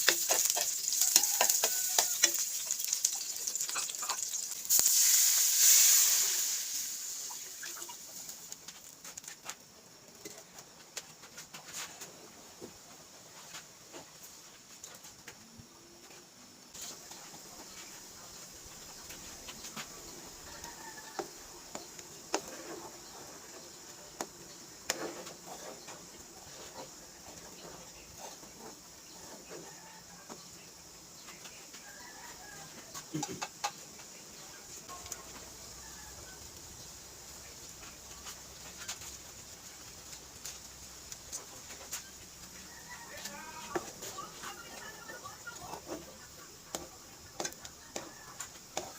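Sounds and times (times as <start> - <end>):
food sizzling in a hot pan: 0.0 - 9.4, 16.7 - 48.9
steady high hiss: 0.0 - 48.9
chicken clucking: 1.1 - 2.0, 3.6 - 4.3
chickens clucking faintly: 7.2 - 48.9.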